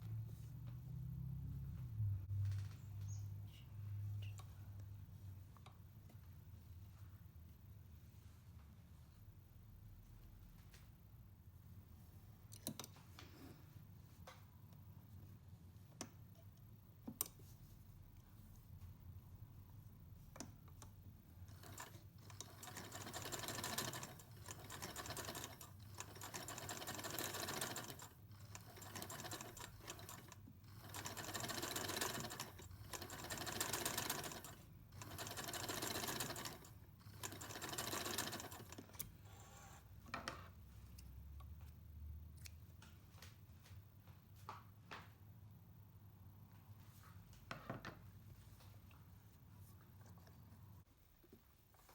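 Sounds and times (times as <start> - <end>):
sewing machine stitching: 21.5 - 39.8.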